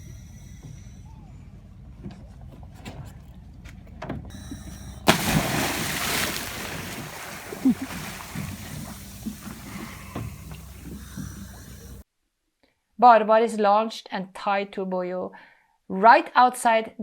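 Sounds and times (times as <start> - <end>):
person jumping into water: 5.1 - 12.0
water washing about: 5.1 - 12.0.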